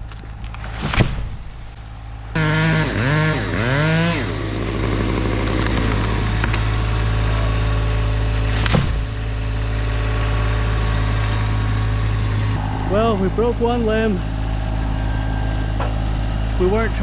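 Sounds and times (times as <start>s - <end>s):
small engine idling: 2.3s - 14.6s
engine revving: 2.3s - 17.0s.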